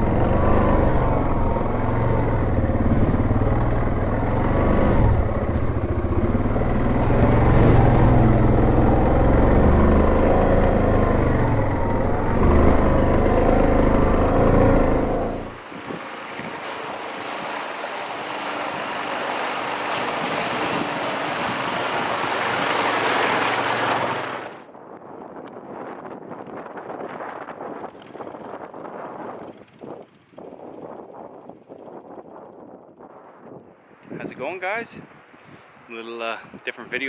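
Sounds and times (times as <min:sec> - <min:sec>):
quad bike engine under load: 0:00.0 - 0:15.6.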